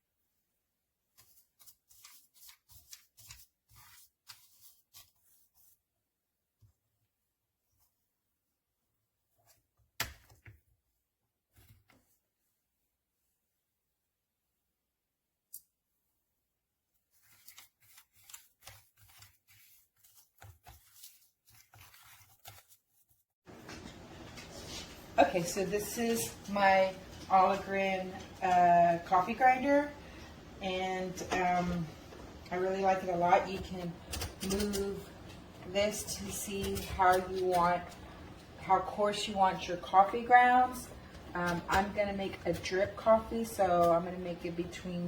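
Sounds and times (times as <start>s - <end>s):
rustling and scraping: 17.1s - 28.7s.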